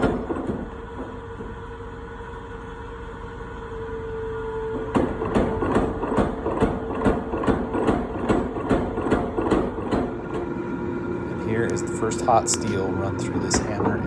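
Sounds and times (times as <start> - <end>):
motor humming: 10.1 - 14.0.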